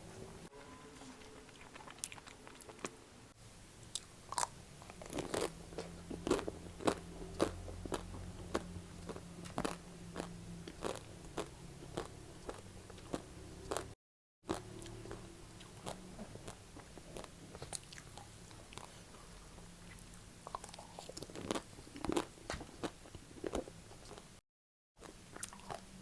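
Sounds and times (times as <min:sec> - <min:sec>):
crunchy biting and chewing: 0:01.0 - 0:03.0, 0:03.9 - 0:13.9, 0:14.5 - 0:18.9, 0:19.9 - 0:24.2.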